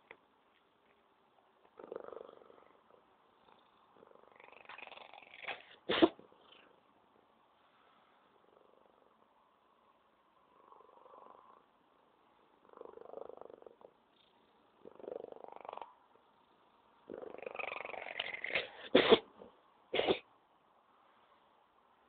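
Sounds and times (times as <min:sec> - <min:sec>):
cat purring: 0:00.0 - 0:07.2, 0:07.8 - 0:20.1
cat sneezing: 0:05.5 - 0:06.2, 0:18.4 - 0:20.3.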